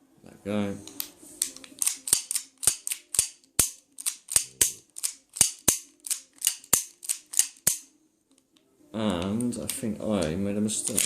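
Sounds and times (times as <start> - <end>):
pistol mechanism clicking: 0.9 - 8.4.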